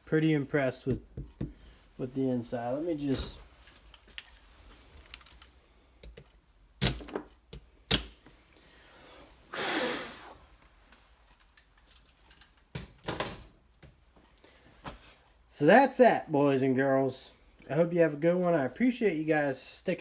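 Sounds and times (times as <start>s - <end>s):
plastic and metal parts clicking: 3.7s - 8.2s.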